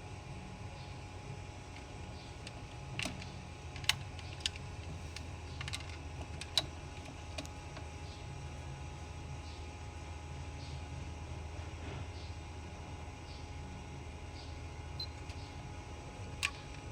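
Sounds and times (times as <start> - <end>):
low steady hum: 0.0 - 16.9.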